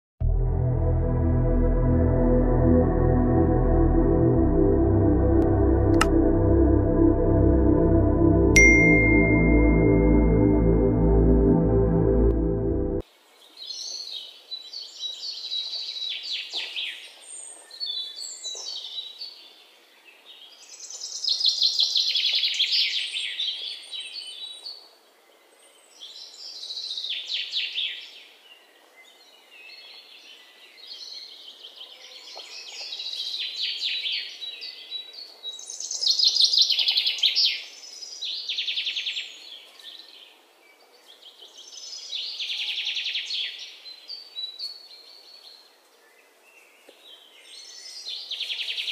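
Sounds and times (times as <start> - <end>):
faint outdoor background noise: 13.0 - 48.9.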